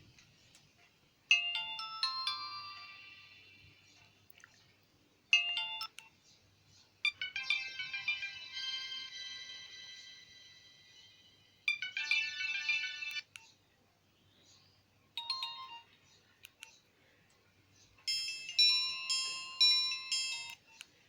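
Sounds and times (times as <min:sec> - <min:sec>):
mobile phone ringtone melodies: 0:01.3 - 0:03.8, 0:05.3 - 0:06.1, 0:07.0 - 0:13.3, 0:15.2 - 0:16.0, 0:18.1 - 0:20.8.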